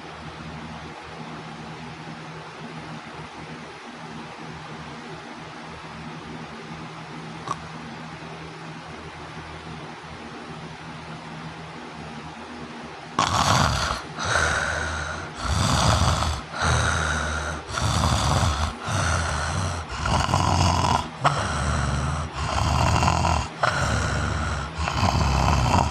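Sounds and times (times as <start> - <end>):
person snoring loudly: 13.2 - 25.9.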